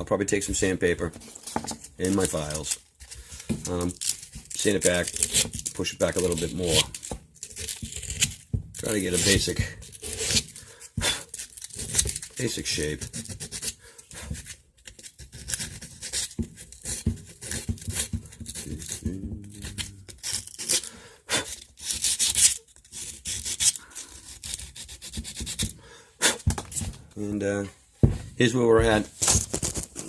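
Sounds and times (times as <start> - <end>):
sandpaper and file scraping wood: 1.2 - 27.0.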